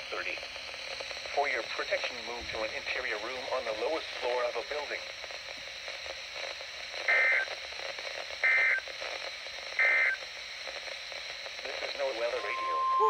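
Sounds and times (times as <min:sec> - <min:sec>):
radio static: 0:00.0 - 0:13.0
short data bursts: 0:08.4 - 0:08.9, 0:09.8 - 0:10.3, 0:11.6 - 0:13.0.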